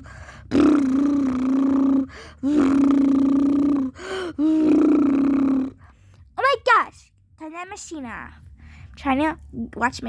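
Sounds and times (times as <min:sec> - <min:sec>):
child humming a buzzing drone: 0:00.0 - 0:05.8.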